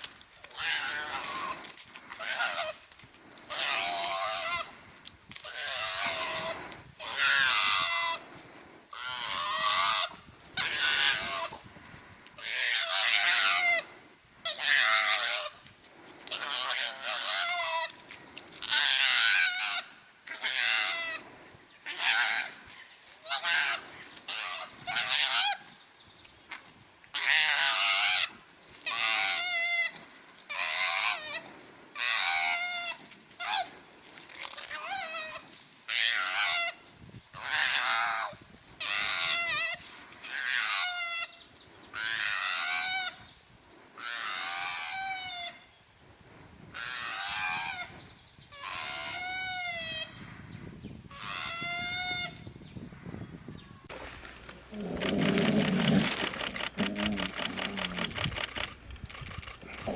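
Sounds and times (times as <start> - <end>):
animal calls with wavering pitch: 54.7 - 58.2.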